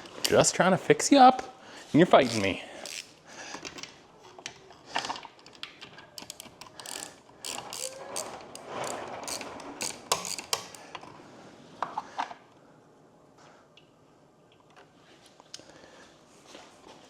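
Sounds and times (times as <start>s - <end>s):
socket ratchet clicking: 2.2s - 3.8s, 6.2s - 10.8s.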